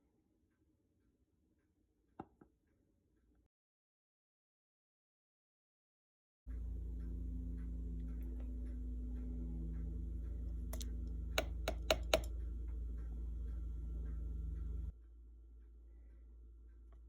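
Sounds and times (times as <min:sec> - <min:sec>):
low electrical hum: 0:06.5 - 0:17.0
sharp clicks: 0:10.7 - 0:12.4.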